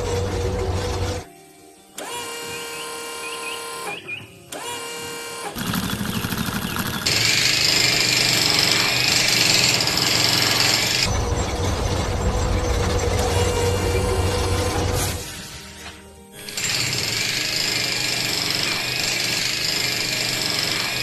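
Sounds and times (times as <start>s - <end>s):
rapid mechanical rattle: 5.6s - 15.2s.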